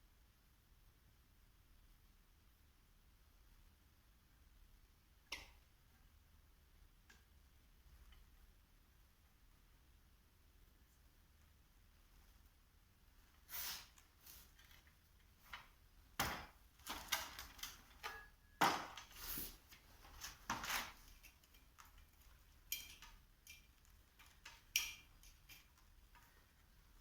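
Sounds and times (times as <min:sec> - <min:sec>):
tools clicking knocking and scraping: 0:20.0 - 0:26.6.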